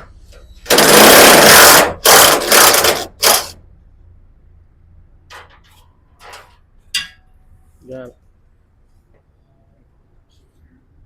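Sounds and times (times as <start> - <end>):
impact wrench running: 0.6 - 3.6.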